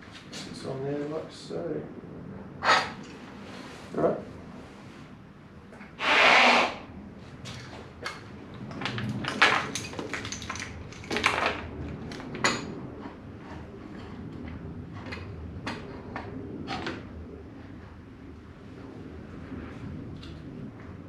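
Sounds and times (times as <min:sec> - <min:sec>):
small hard parts clicking and rattling: 0:07.5 - 0:12.6.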